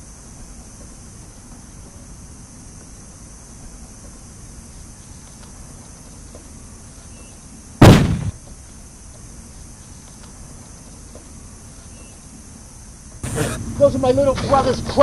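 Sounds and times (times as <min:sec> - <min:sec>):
gift box bursting with loud bang: 0:07.8 - 0:08.4.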